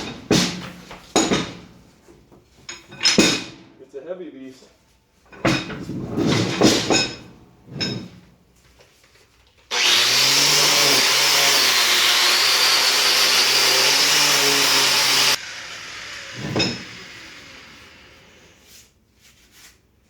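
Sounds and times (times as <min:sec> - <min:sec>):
wire wheel grinder scrubbing metal: 0:09.7 - 0:18.6.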